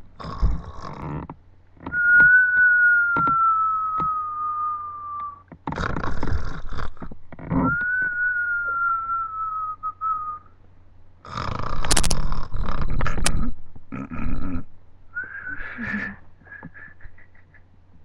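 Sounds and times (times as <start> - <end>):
rough snoring: 0.2 - 1.4, 5.7 - 7.8, 11.2 - 14.7
high whistle while snoring: 1.9 - 5.4, 7.6 - 10.5.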